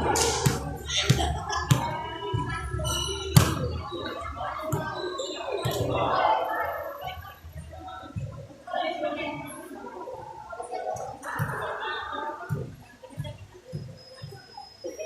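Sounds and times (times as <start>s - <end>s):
volleyball thuds: 0.0s - 2.4s, 3.3s - 3.7s
murmur of people talking: 0.0s - 15.0s.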